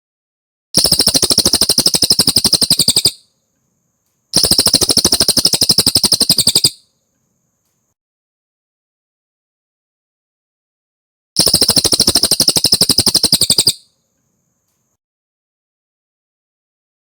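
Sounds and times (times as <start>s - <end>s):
bird singing rapid high trills: 0.8s - 3.3s, 4.3s - 7.0s, 11.4s - 13.9s.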